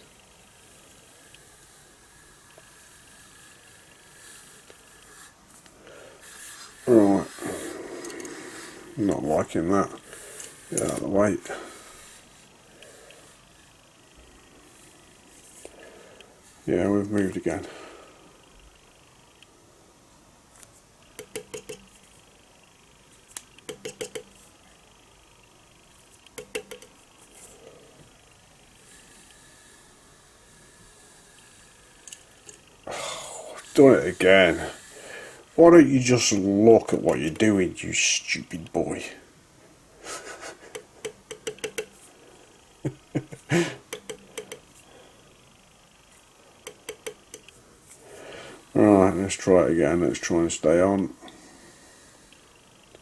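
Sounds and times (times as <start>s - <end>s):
metal gauge clicks and taps: 21.1s - 21.9s, 23.4s - 24.3s, 26.3s - 27.0s, 40.7s - 42.0s, 43.9s - 44.6s, 46.6s - 47.6s.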